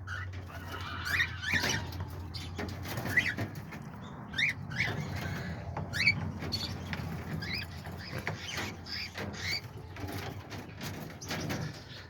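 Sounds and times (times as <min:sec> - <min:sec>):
parrots chirping: 0:04.0 - 0:09.6.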